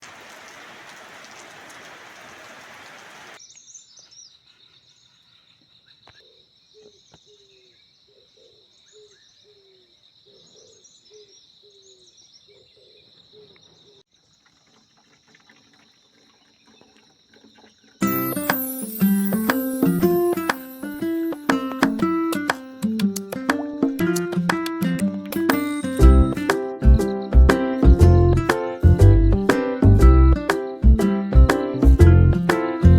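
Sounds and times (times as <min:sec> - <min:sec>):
music: 0:18.0 - 0:32.9.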